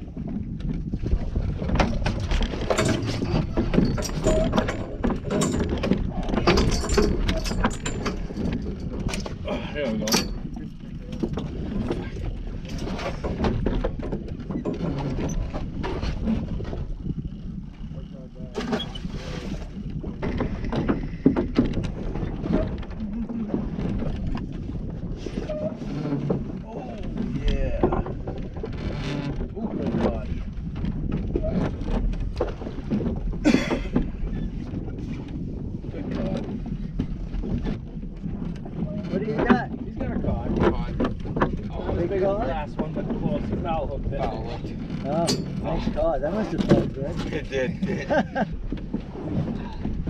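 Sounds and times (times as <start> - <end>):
boat engine low rumble: 0.0 - 50.0
fishing gear clicking and clattering: 0.2 - 50.0.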